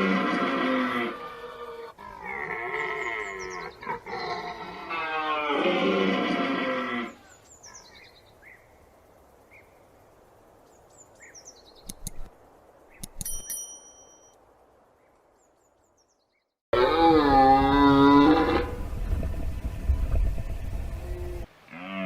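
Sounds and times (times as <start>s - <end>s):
sharp clicks: 11.8s - 12.3s, 12.9s - 13.6s.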